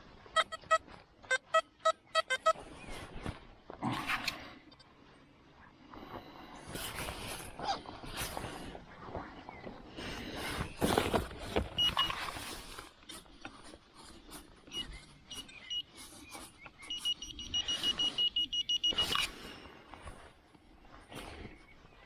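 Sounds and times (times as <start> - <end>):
metal detector beeping: 0.4 - 2.7, 11.8 - 12.5, 14.7 - 19.4.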